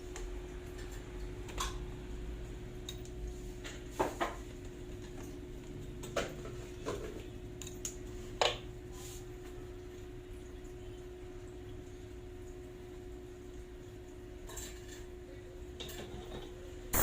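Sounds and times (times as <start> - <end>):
steady hum: 16.8 - 17.0.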